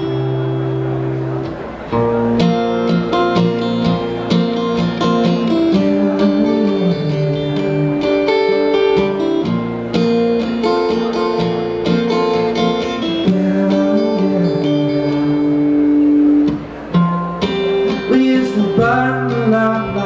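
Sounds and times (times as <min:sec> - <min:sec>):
bass guitar: 0:00.0 - 0:20.0
guitars strumming and picking: 0:00.0 - 0:20.0.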